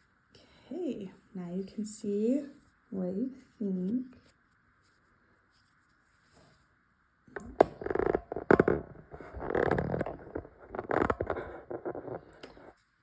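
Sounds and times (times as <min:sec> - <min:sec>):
handling noise rubbing: 0:07.4 - 0:13.0.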